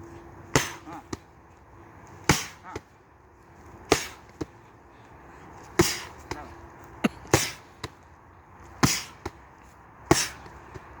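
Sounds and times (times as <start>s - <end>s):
punches smacking padded target: 0.5s - 1.2s, 2.2s - 2.8s.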